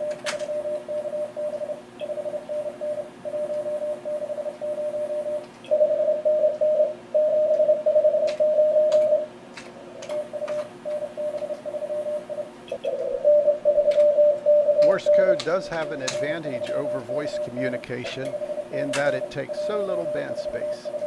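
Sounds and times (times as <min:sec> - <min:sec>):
morse code tone: 0:00.0 - 0:09.3, 0:10.2 - 0:21.0
radio hiss: 0:14.9 - 0:21.0
sharp clicks: 0:18.2 - 0:19.2.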